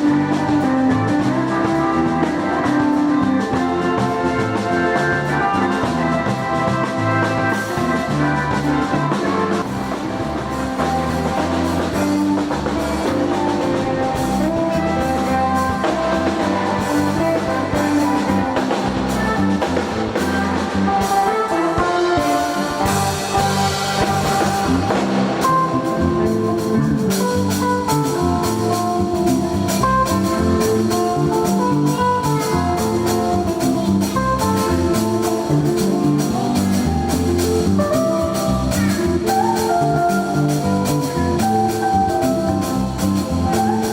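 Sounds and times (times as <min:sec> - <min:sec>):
drum kit beat: 0:00.0 - 0:43.9
instrumental gospel band: 0:00.0 - 0:43.9.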